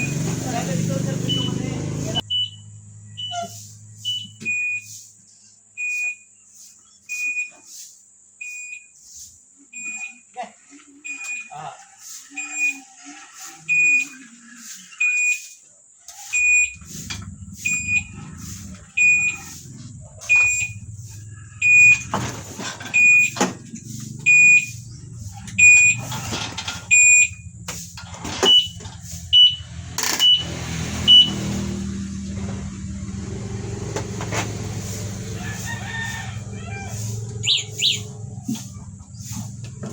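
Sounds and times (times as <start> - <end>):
alarm beeping: 1.2 - 4.9, 16.3 - 32.0, 35.6 - 38.9
low hum: 16.6 - 34.0.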